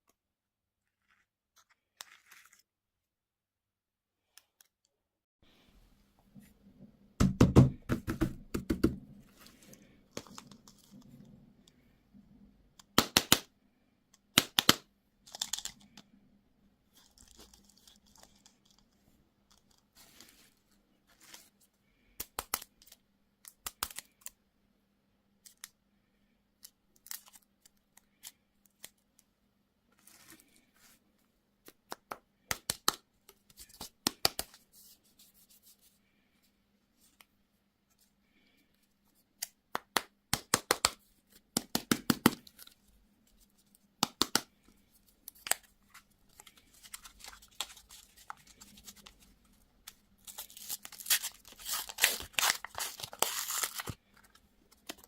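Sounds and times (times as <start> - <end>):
packaging torn and crinkled: 49.9 - 54.0.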